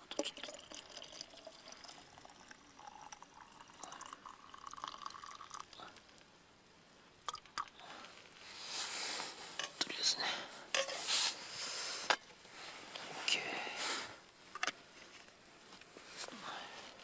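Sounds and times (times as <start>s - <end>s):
hot water pouring into bottle: 0.0s - 6.3s.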